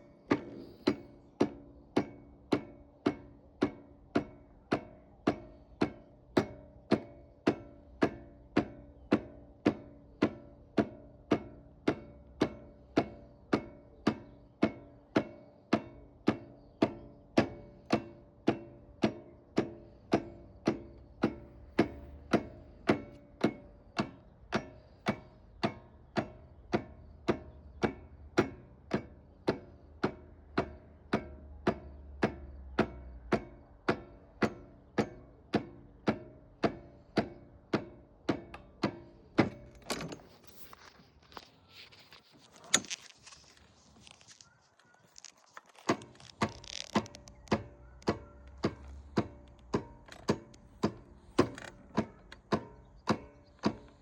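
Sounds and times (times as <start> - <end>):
starter solenoid clicking: 38.3 - 41.3, 45.6 - 54.0.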